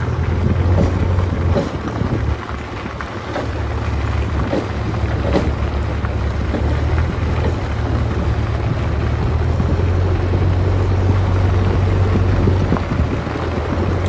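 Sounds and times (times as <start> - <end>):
heavy diesel engine running: 0.0 - 14.0
short knocks and scrapes: 0.3 - 7.9.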